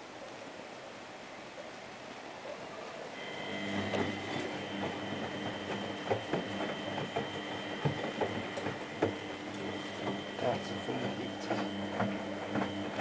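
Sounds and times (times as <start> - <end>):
washing machine motor whine: 3.1 - 13.0
knocks inside washing machine: 3.4 - 13.0.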